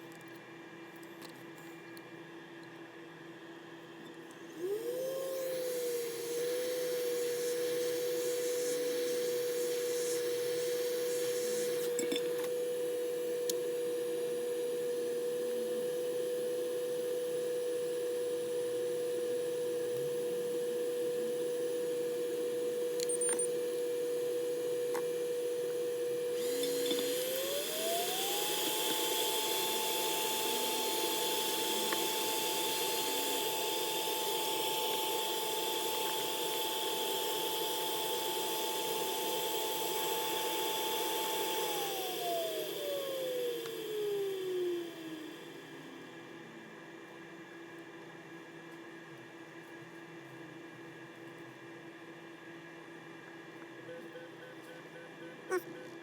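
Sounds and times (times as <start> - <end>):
small electric motor whining: 4.5 - 46.0.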